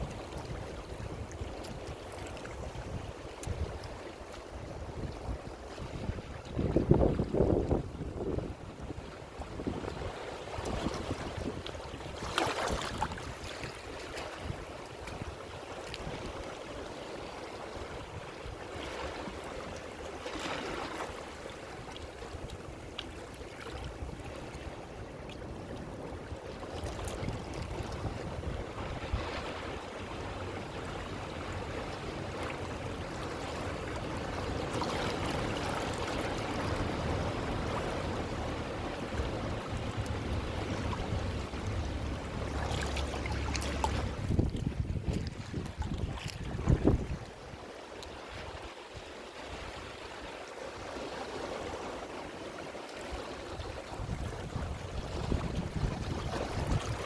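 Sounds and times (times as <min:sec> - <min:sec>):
ocean waves breaking on shore: 0:00.0 - 0:57.0.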